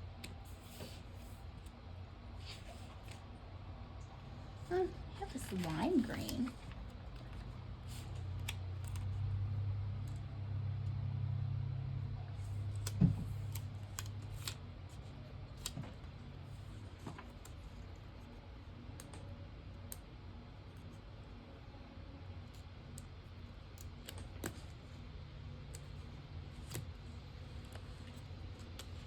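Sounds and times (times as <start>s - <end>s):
paper stickers clicking and tapping: 12.4s - 21.0s.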